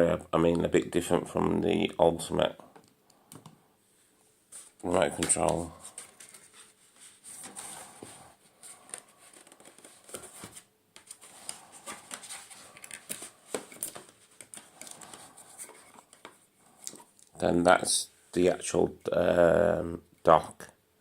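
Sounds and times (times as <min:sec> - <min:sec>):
packaging rustling and scraping: 0:04.6 - 0:17.4.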